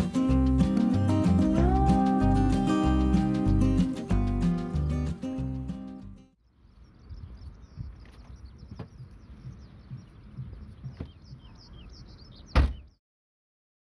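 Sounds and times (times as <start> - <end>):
small birds chirping: 0.0 - 13.0
loud thump: 12.5 - 12.9.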